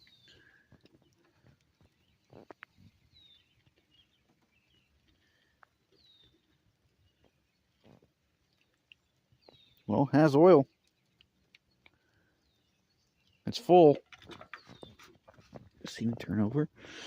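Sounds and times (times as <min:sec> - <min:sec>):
faint bird chirps: 0:00.0 - 0:10.0, 0:14.2 - 0:15.5.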